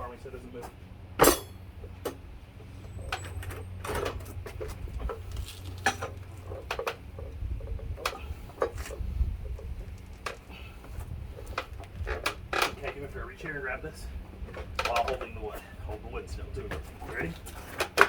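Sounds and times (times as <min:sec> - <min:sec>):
pry bars clinking on wheel rim: 0:01.2 - 0:02.2, 0:02.9 - 0:10.8.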